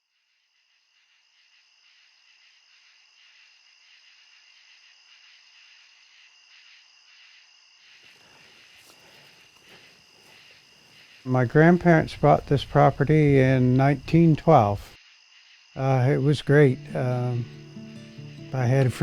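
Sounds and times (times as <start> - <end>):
insects chirring: 0.0 - 19.0.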